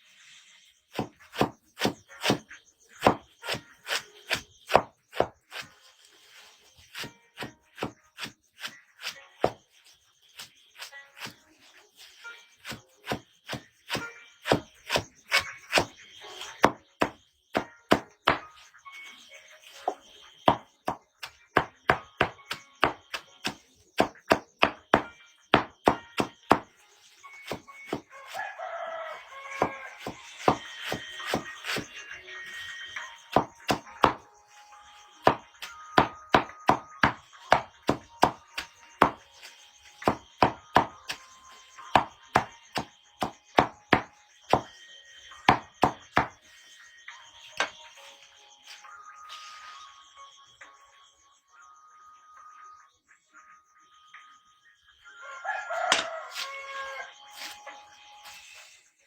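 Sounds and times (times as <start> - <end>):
knife chopping on a board: 0.9 - 5.8, 6.8 - 9.6, 10.4 - 11.4, 12.0 - 18.6, 19.9 - 26.7, 27.4 - 28.0, 29.6 - 31.9, 33.3 - 34.2, 35.2 - 41.2, 41.9 - 44.8, 45.5 - 46.4, 55.9 - 56.5.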